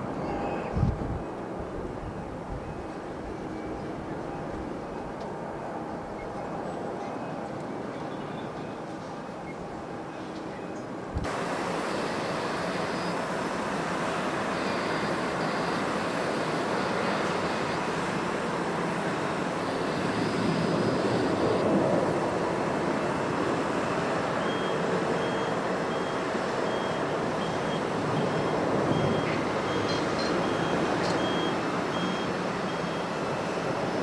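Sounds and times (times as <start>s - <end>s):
jet engine noise: 0.0s - 34.0s
wind: 0.0s - 34.0s.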